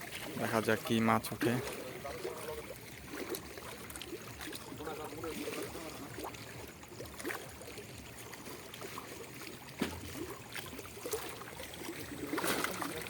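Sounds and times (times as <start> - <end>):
water dripping and trickling: 0.0 - 13.0.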